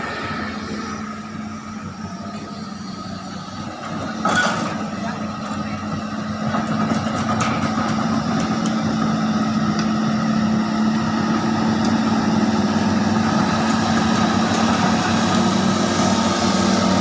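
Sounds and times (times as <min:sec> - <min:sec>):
excavator diesel engine running: 0:00.0 - 0:17.0.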